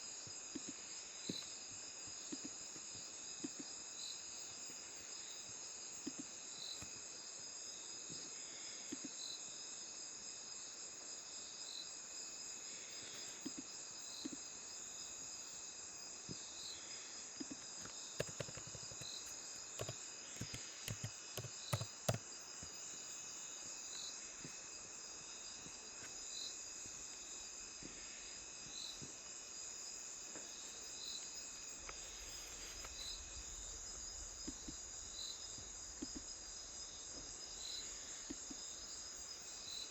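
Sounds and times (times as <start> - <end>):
crickets chirping: 0.0 - 39.9
sharp clicks: 17.8 - 22.7.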